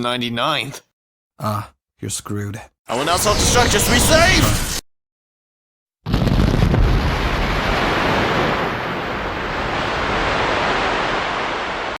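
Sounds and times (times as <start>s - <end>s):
explosion: 6.1s - 12.0s.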